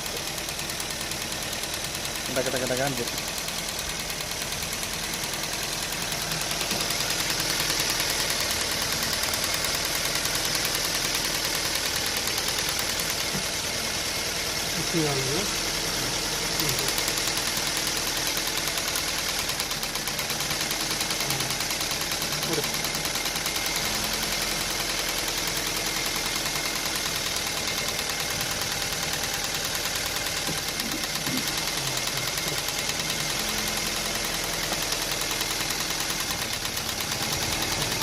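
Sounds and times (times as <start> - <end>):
car engine idling: 0.0 - 38.0.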